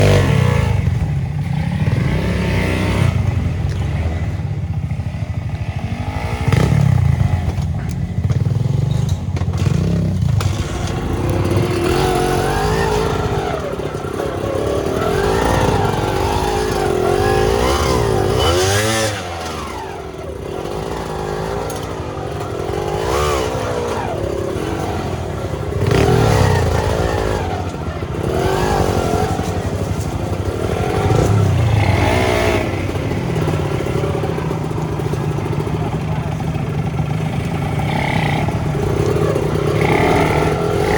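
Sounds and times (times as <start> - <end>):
motorcycle engine revving: 0.0 - 40.9.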